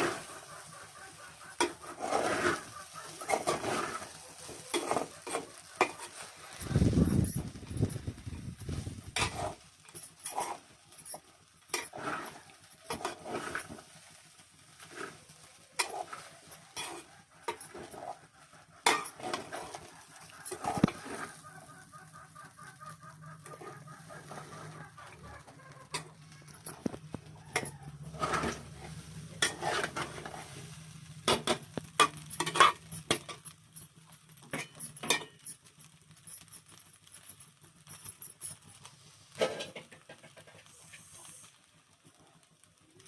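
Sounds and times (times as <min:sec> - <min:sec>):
hens clucking: 0:00.0 - 0:09.6, 0:15.2 - 0:30.2
utensils clinking and scraping: 0:00.0 - 0:22.0, 0:22.9 - 0:41.3.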